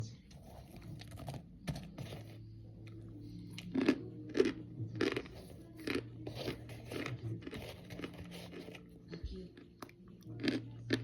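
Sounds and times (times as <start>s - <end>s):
crunchy chewing: 3.5s - 11.0s.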